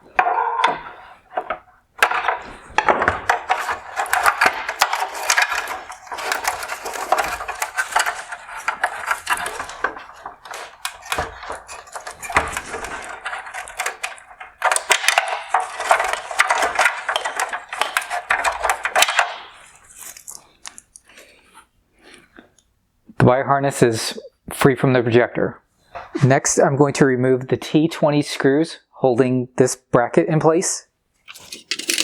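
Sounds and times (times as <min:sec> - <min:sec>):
plastic clicking and rattling: 0:01.4 - 0:21.1, 0:31.3 - 0:32.0.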